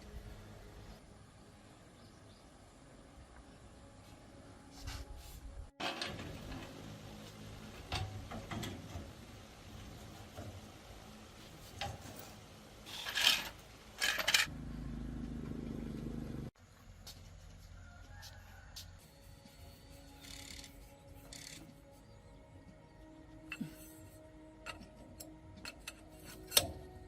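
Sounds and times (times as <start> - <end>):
steady low hum: 0.0 - 12.9
metal tools clinking and scraping: 11.7 - 14.5, 23.5 - 26.9.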